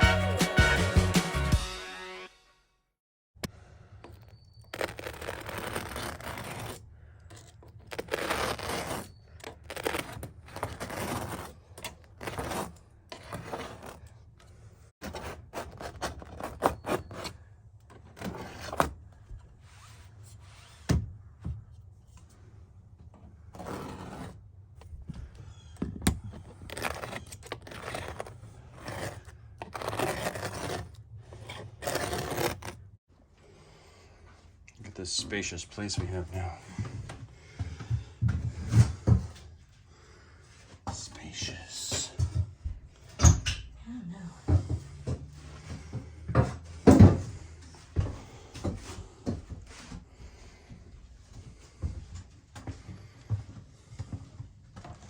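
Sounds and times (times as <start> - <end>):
scraping and rubbing: 4.1 - 17.4, 23.4 - 25.0, 26.2 - 33.0.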